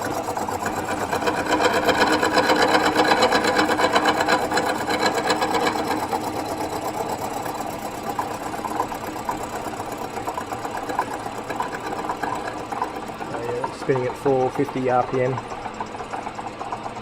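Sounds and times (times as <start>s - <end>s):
milling machine face milling metal: 0.0s - 17.0s.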